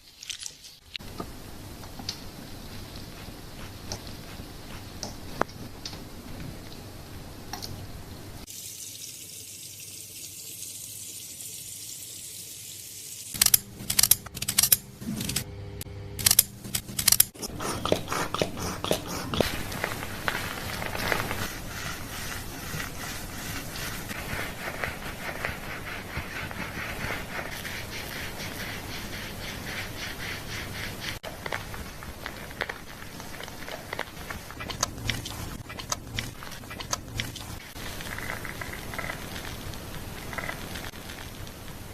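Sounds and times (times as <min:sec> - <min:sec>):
water splashing: 0:17.3 - 0:40.9
water spraying on hair: 0:17.4 - 0:41.9.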